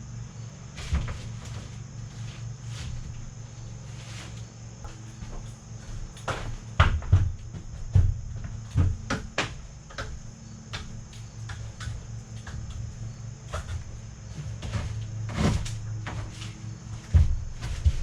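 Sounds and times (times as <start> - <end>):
steady low hum: 0.0 - 18.0
building work knocks and clatter: 0.8 - 18.0.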